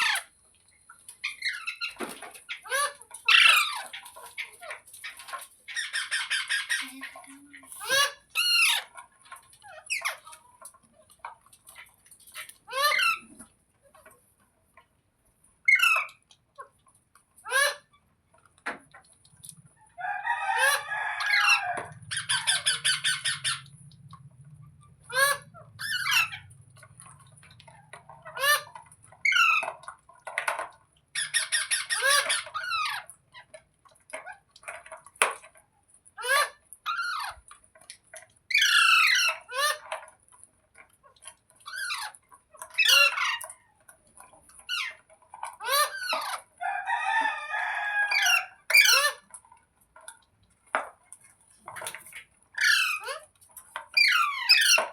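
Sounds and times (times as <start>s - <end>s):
parrot squawking: 0.0s - 0.3s, 1.2s - 9.0s, 12.4s - 13.3s, 17.4s - 18.0s, 20.3s - 23.8s, 24.8s - 27.1s, 27.7s - 29.8s, 31.2s - 33.1s, 36.2s - 37.4s, 38.5s - 39.9s, 41.6s - 43.5s, 44.6s - 49.3s, 52.6s - 53.3s, 53.9s - 54.9s
harsh parrot screeches: 54.0s - 54.9s.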